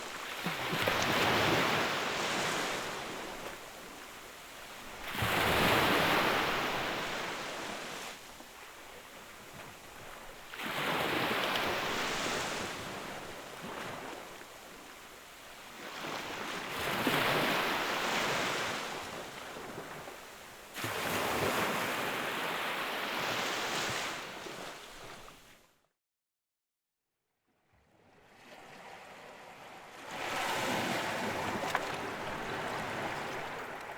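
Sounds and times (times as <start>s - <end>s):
ocean waves surging: 28.6s - 33.9s.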